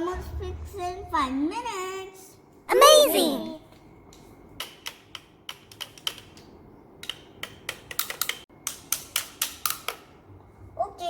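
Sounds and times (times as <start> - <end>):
plastic toy tools clicking: 4.6 - 6.4, 7.0 - 10.1.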